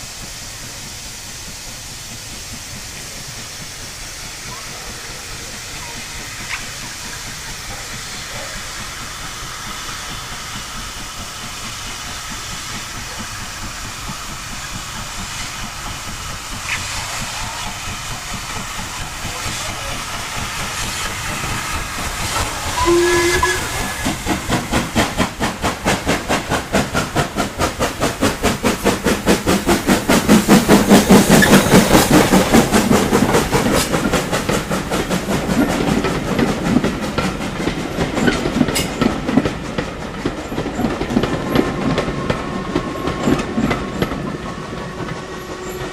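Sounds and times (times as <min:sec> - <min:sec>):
steam exhaust beats: 0:00.0 - 0:45.9
steam locomotive hiss: 0:00.0 - 0:45.9
steam whistle blast: 0:22.7 - 0:24.2.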